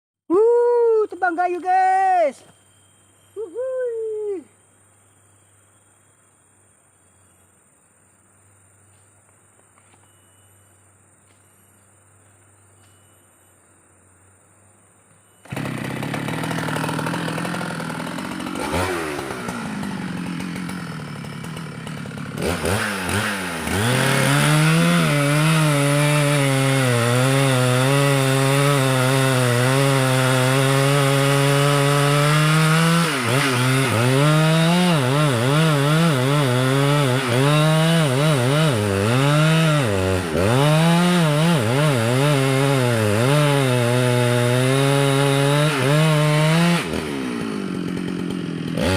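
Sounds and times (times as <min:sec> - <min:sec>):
chainsaw cutting wood: 0:15.4 - 0:48.9.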